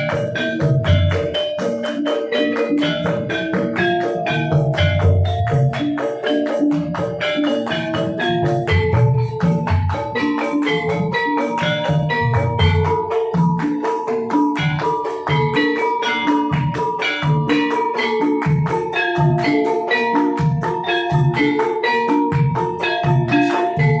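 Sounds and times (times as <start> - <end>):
metallophones struck with mallets: 0.0 - 24.0.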